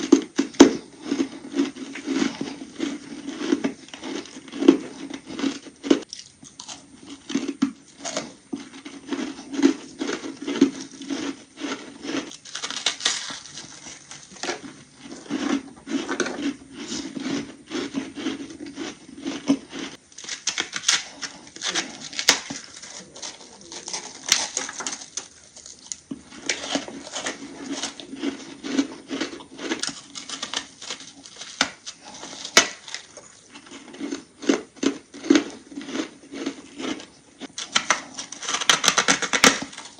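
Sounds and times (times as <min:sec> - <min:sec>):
ice crunching between teeth: 0:00.0 - 0:39.9.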